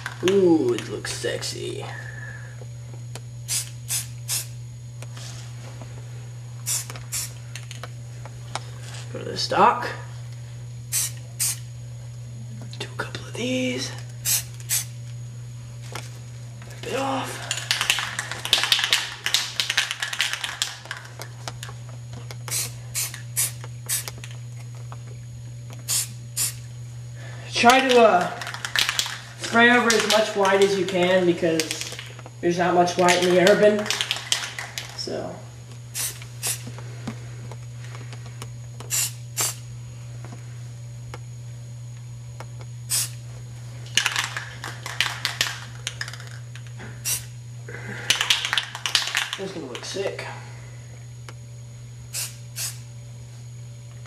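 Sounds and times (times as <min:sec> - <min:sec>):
spray paint can squirts: 0:06.7 - 0:07.4, 0:10.9 - 0:11.6, 0:14.2 - 0:14.9, 0:22.5 - 0:24.2, 0:25.9 - 0:26.6, 0:36.0 - 0:36.6, 0:38.9 - 0:39.6, 0:42.9 - 0:43.2, 0:47.0 - 0:47.3, 0:52.2 - 0:52.8.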